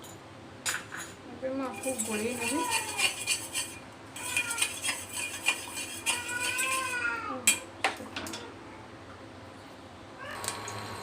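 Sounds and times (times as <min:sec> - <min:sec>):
cat meowing: 0:10.2 - 0:10.4.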